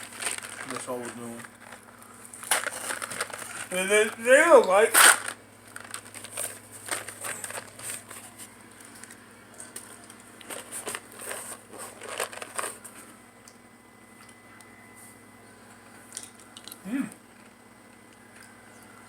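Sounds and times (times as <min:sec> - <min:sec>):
candy package crinkling: 0:00.0 - 0:13.1.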